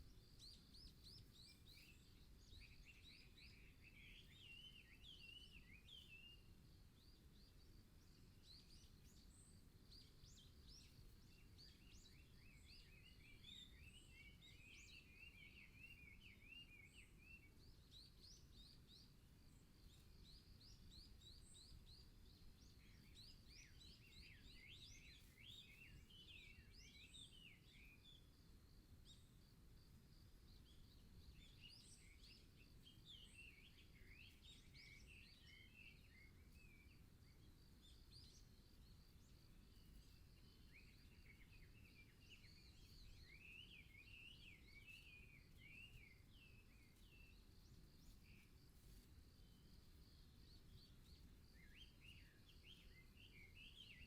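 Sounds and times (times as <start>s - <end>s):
small birds twittering: 0.0s - 54.0s.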